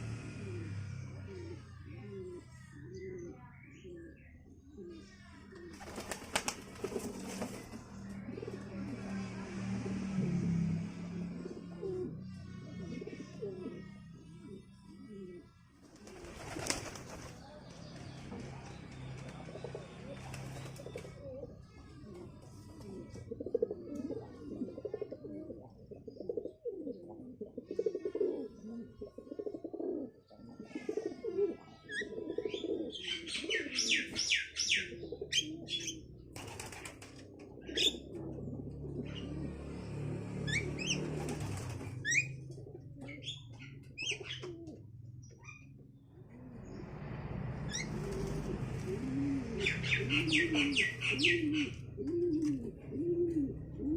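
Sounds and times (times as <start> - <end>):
pigeons cooing: 0.0 - 18.2, 18.9 - 53.9
wings flapping: 5.7 - 7.8, 15.8 - 17.5, 20.1 - 21.2, 36.4 - 37.3, 40.9 - 42.1, 47.8 - 51.1
harsh bird chirping: 49.4 - 52.0.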